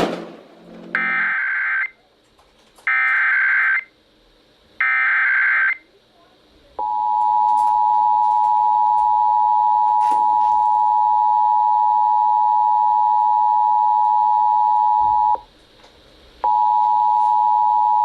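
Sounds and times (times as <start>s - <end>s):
two-tone alarm: 1.0s - 1.9s, 2.9s - 3.9s, 6.8s - 15.4s, 16.4s - 18.0s.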